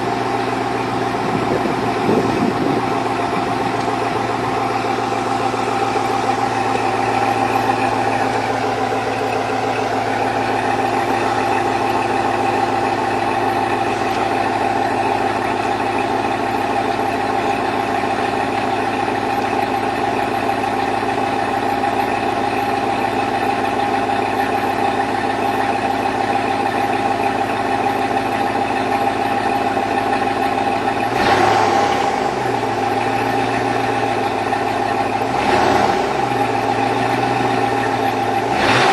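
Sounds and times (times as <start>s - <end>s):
engine revving: 0.0s - 18.7s, 31.0s - 38.9s
engine idling with knock: 0.0s - 38.9s.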